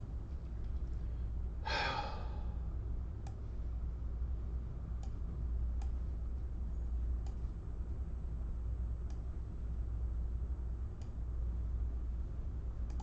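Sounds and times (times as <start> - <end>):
low hum: 0.0 - 13.0
breathy exhale: 1.6 - 2.6
faint clicks: 5.0 - 5.2, 5.8 - 6.0, 7.2 - 7.4, 11.0 - 11.2.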